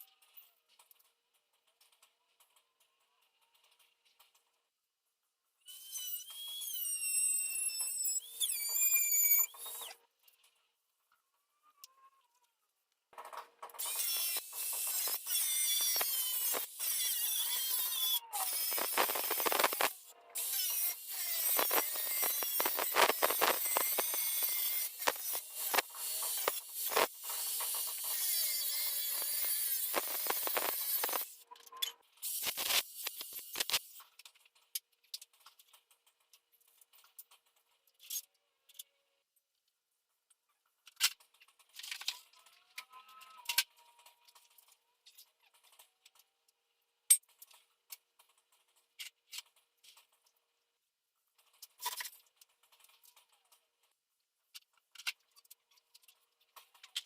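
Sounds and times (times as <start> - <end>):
sharp clicks and knocks: 18.5 - 20.0, 21.3 - 38.2
short clatter of small parts: 40.8 - 42.5, 51.4 - 57.0.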